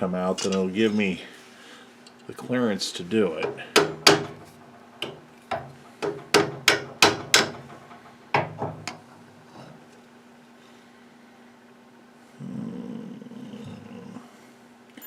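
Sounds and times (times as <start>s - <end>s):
hammer striking metal: 3.4s - 9.0s.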